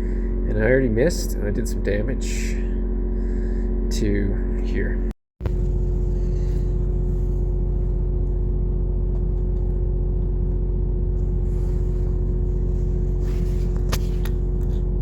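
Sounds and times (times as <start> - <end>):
machinery droning hum: 0.0 - 15.0.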